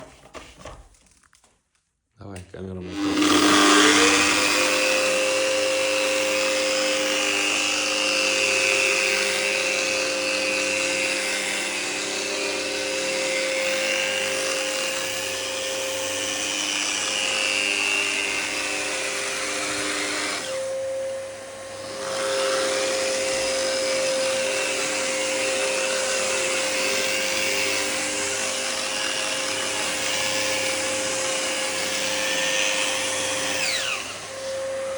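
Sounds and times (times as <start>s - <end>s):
sander motor whine: 2.8s - 34.9s.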